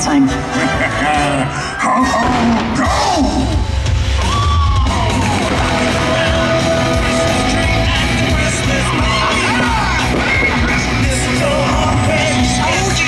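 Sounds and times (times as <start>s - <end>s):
loud soundtrack music: 0.0s - 13.0s
yelled vocals: 4.8s - 13.0s
singing: 5.8s - 13.0s.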